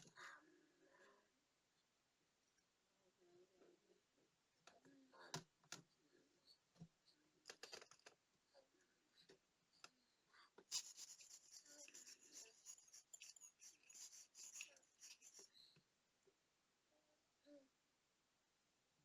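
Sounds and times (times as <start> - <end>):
quick scratchy rubbing: 10.7 - 15.5.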